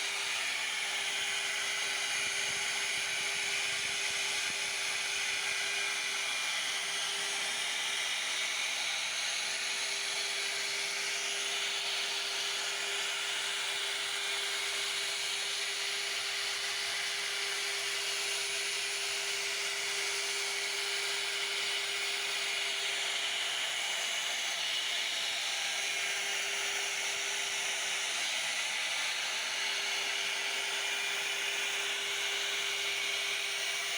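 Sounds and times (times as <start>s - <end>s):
router spindle whine: 0.0s - 33.9s.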